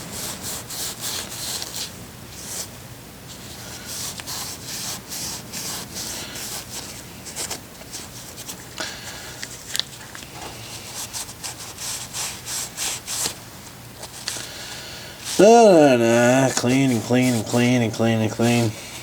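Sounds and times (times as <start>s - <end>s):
hand scrubbing metal part: 15.3s - 19.0s.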